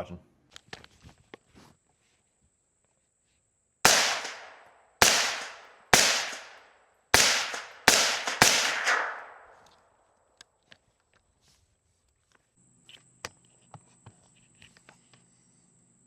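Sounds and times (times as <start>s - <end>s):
suppressed rifle shots: 3.9s - 9.8s.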